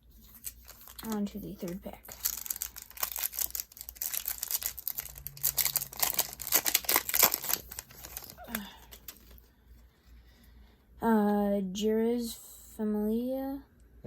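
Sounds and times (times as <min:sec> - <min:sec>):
wrapper tearing and crinkling: 0:00.2 - 0:09.4.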